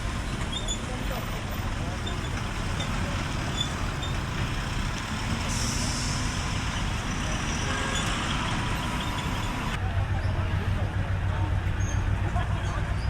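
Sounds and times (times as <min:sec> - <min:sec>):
truck engine idling: 0:00.0 - 0:13.0
air hissing: 0:05.4 - 0:07.1.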